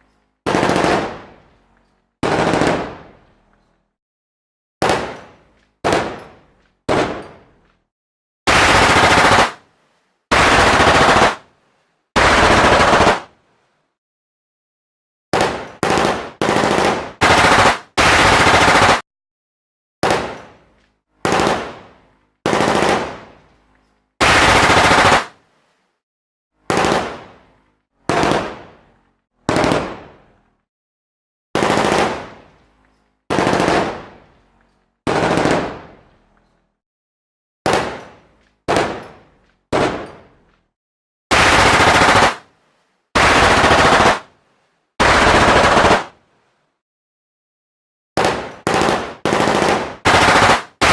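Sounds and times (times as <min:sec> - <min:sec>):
machine-gun fire bursts: 0:00.5 - 0:01.4, 0:02.2 - 0:03.1, 0:04.8 - 0:05.2, 0:05.8 - 0:06.2, 0:08.5 - 0:09.6, 0:10.3 - 0:11.4, 0:12.2 - 0:13.3, 0:15.3 - 0:19.0, 0:21.2 - 0:23.3, 0:24.2 - 0:25.4, 0:26.7 - 0:27.3, 0:28.1 - 0:28.7, 0:29.5 - 0:30.2, 0:31.6 - 0:32.4, 0:33.3 - 0:34.2, 0:35.1 - 0:36.0, 0:37.7 - 0:38.0, 0:38.7 - 0:39.0, 0:41.3 - 0:42.5, 0:43.2 - 0:44.3, 0:45.0 - 0:46.2, 0:48.2 - 0:50.9.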